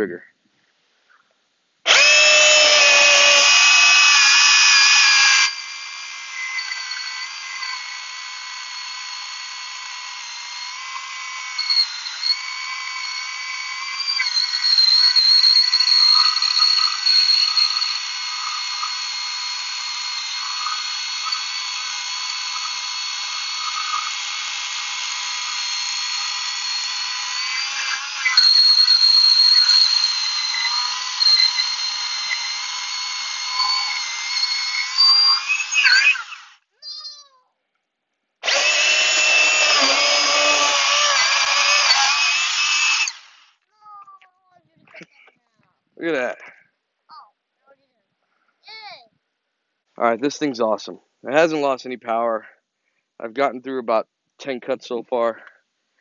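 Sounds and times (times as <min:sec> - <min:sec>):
electric chainsaw cutting wood: 0:01.8 - 0:36.6, 0:38.4 - 0:43.6.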